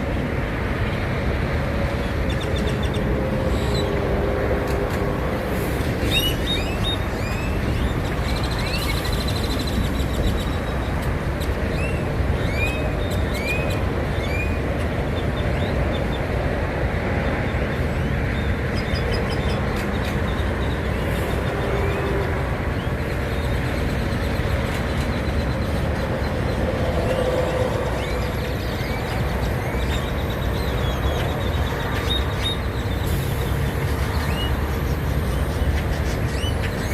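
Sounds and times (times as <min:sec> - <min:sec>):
birds whistling calls: 0:06.0 - 0:11.0.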